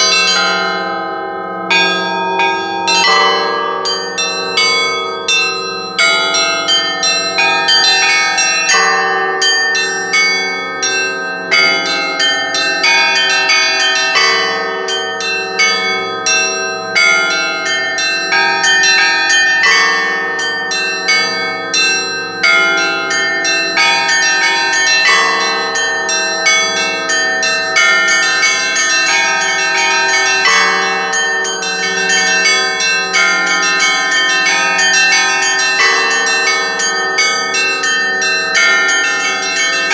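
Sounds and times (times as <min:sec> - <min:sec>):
large church bell striking: 0:00.0 - 0:39.9
smaller higher bells pealing: 0:00.0 - 0:39.9.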